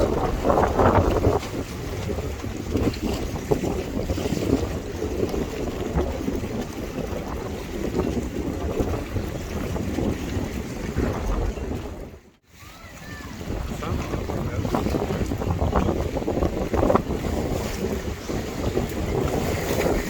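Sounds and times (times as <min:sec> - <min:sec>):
wind buffeting microphone: 0:00.0 - 0:20.0
ferry engine rumble: 0:10.9 - 0:13.9.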